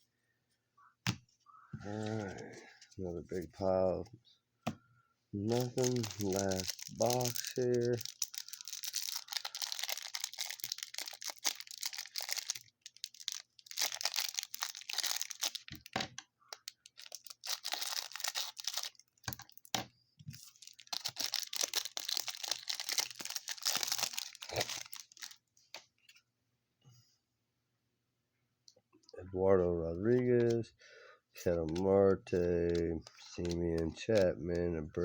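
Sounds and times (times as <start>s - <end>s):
cardboard and wrapper tearing: 5.4s - 16.0s, 16.6s - 19.7s, 20.3s - 25.4s.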